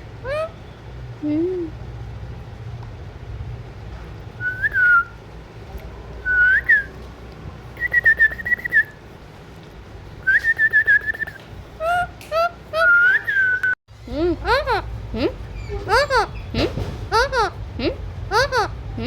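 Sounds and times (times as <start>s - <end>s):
parakeet whistling: 7.8s - 9.0s, 10.3s - 13.8s.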